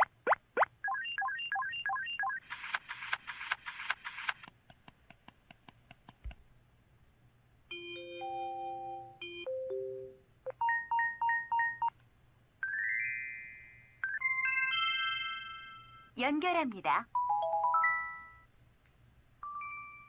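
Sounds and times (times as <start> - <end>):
repeating beep pattern: 0.9 - 4.4
quick clicks: 2.4 - 6.4.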